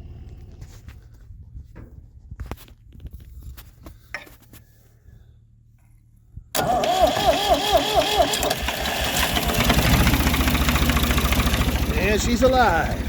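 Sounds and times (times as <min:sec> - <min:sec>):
low steady rumble: 0:00.0 - 0:04.0, 0:09.9 - 0:13.0.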